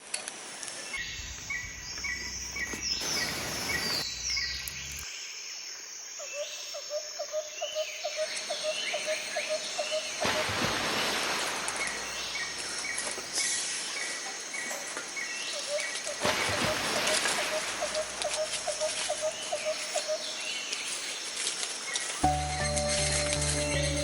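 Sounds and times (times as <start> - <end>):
wild birds singing and calling: 0.6 - 5.1, 6.2 - 10.5, 11.8 - 24.0.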